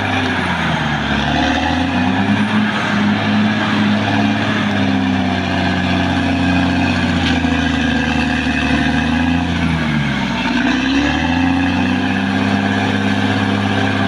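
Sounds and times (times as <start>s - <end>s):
bulldozer diesel engine running: 0.0s - 14.0s.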